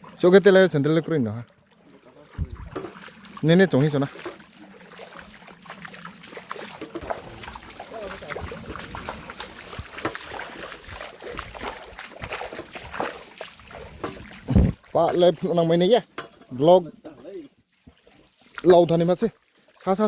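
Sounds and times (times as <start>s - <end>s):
water splashing and sloshing: 0.0s - 20.0s.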